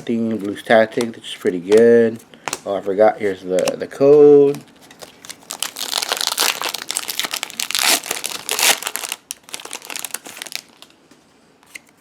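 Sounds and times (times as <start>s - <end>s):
foil wrapper crinkling: 4.8s - 10.9s.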